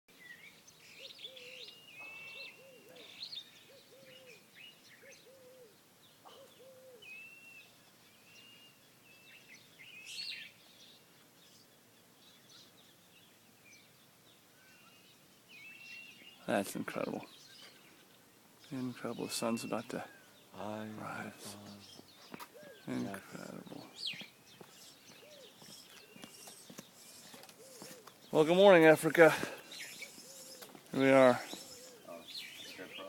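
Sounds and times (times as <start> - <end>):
birds chirping: 0.1 - 33.0
low hooting bird call: 0.9 - 7.7, 19.0 - 28.6, 29.2 - 33.0.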